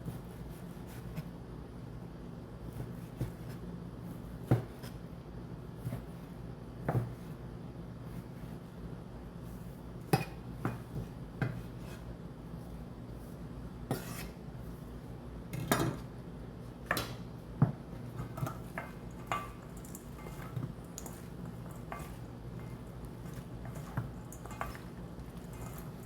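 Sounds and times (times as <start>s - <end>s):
dishes and utensils clinking: 18.4s - 26.0s.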